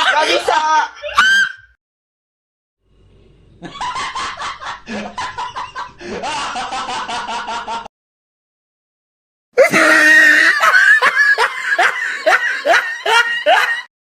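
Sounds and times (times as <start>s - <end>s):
person snickering: 9.6s - 13.9s.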